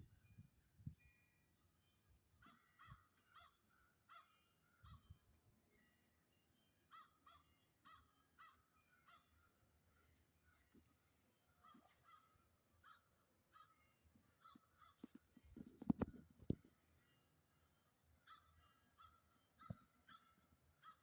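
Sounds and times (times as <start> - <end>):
faint bird calls: 2.4 - 5.3, 6.9 - 15.7, 18.2 - 21.0.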